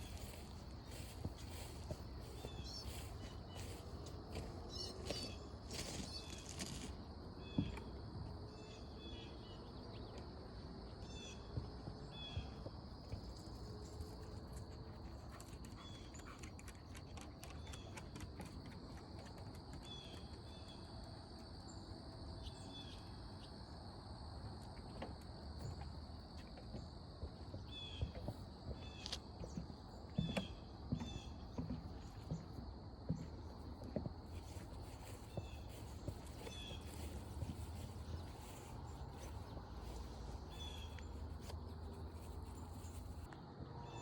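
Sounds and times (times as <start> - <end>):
insect chirps: 0.0 - 7.6
footsteps on trail: 0.0 - 7.7, 27.2 - 43.3.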